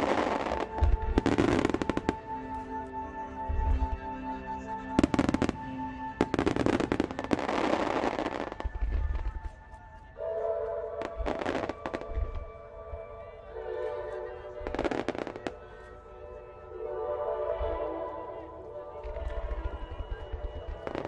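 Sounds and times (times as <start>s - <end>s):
fireworks crackling: 0.0s - 2.6s, 5.0s - 9.6s, 11.0s - 12.6s, 14.6s - 15.8s.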